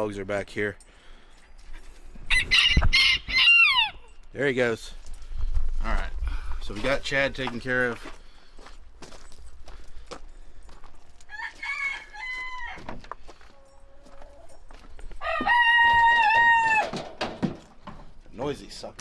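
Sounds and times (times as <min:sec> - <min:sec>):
rooster crowing: 0:02.3 - 0:04.0, 0:11.3 - 0:13.0, 0:15.2 - 0:17.0.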